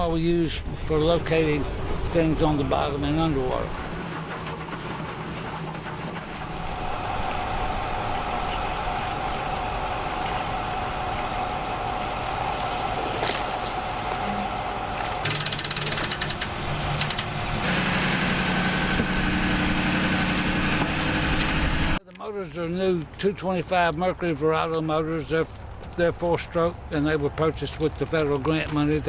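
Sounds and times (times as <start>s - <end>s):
outboard motors running: 0.0s - 29.0s
rattling clatter: 3.6s - 6.8s, 15.2s - 17.7s.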